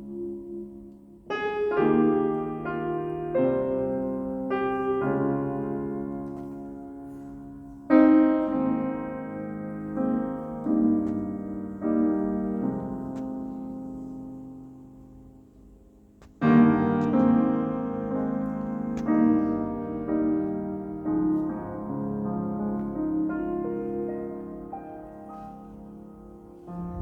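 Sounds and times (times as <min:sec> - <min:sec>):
slow piano chords: 0:00.0 - 0:27.0.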